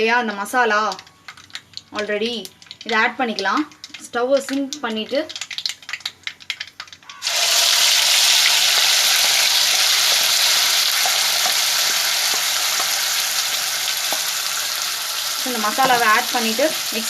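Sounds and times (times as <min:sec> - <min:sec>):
small pops in oil: 0:01.3 - 0:07.2
paste sizzling in hot oil: 0:07.2 - 0:17.0.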